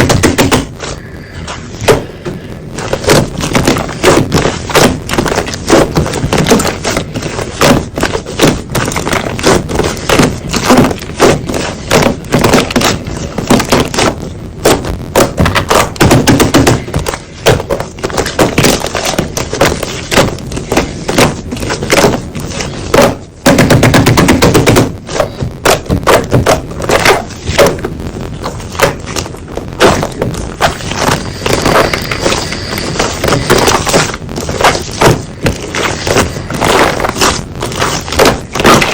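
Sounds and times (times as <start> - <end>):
slime crackling and popping: 0.0 - 38.9
thick slime squish: 24.5 - 38.9.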